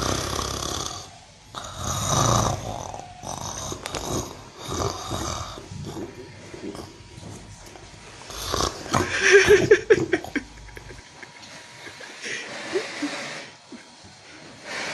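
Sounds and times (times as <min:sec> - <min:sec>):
loud snoring: 0:00.0 - 0:07.0, 0:08.3 - 0:10.4, 0:12.2 - 0:13.6
breathy breath: 0:12.2 - 0:13.6, 0:14.3 - 0:14.9.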